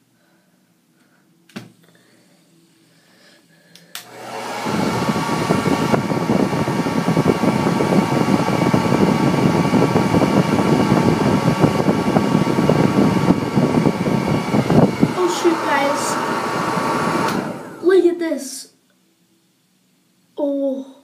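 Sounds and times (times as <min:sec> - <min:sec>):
hair dryer switch click: 0:03.8 - 0:04.4, 0:17.2 - 0:17.5
hair dryer blowing air: 0:03.9 - 0:18.0.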